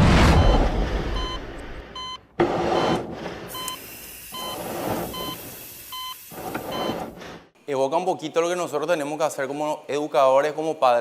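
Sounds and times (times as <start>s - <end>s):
short electronic beeps: 0.4s - 2.2s, 2.8s - 7.1s.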